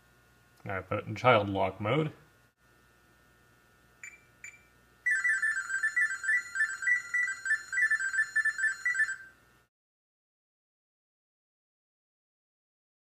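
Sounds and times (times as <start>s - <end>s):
microwave key-press beeps: 4.0s - 4.7s.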